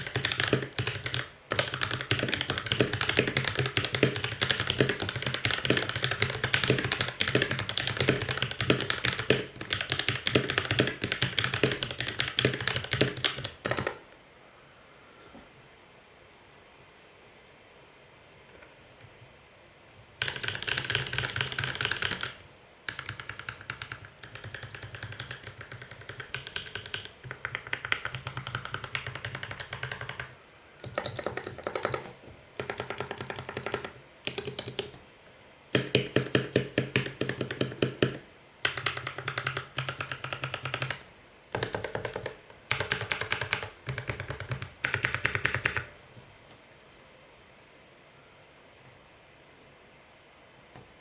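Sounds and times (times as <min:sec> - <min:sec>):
typing on mechanical keyboard: 0:00.0 - 0:14.0, 0:20.2 - 0:35.0, 0:35.8 - 0:45.9.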